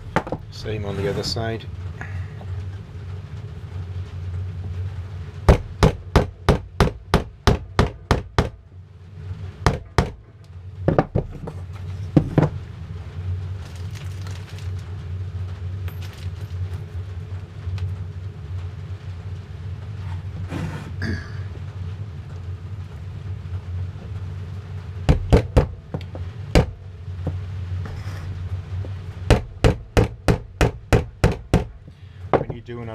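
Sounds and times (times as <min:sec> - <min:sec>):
hammer tapping nails into wood: 0:29.3 - 0:31.7.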